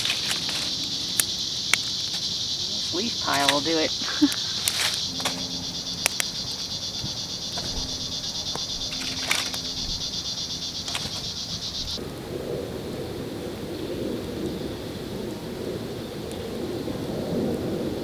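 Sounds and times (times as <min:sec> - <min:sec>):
sharp crackles: 0:00.0 - 0:12.0
crickets chirping: 0:00.0 - 0:18.0.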